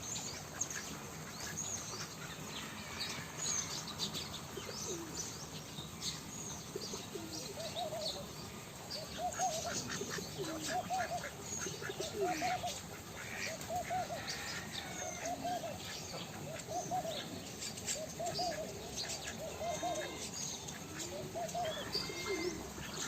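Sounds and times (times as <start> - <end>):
small birds chirping: 0.0 - 23.0
doves cooing: 4.4 - 5.3, 6.6 - 8.4, 9.0 - 23.0.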